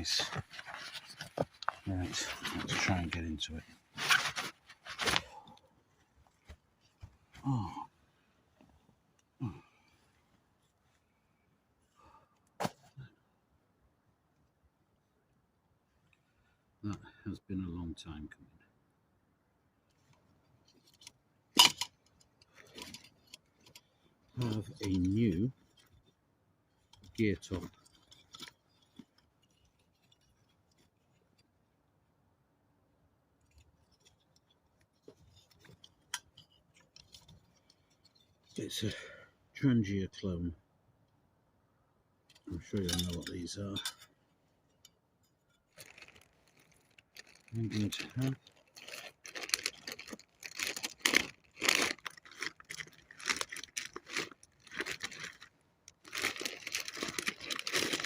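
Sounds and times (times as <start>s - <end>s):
food packets rustling: 45.7s - 58.0s.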